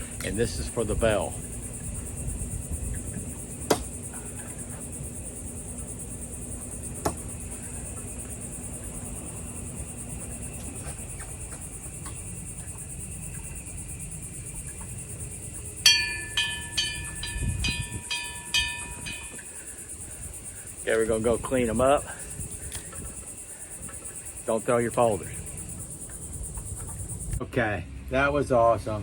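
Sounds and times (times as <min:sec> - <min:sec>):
crickets chirping: 0:00.0 - 0:29.0
metal bell ringing: 0:15.9 - 0:19.7.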